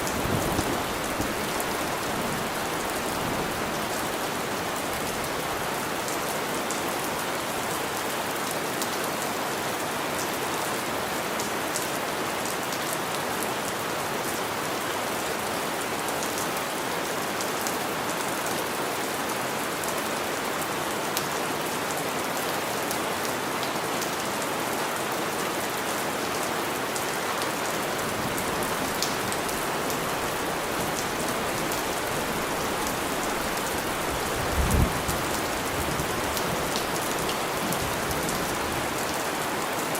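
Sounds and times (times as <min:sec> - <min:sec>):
heavy rain pattering: 0:00.0 - 0:13.9, 0:16.3 - 0:39.9.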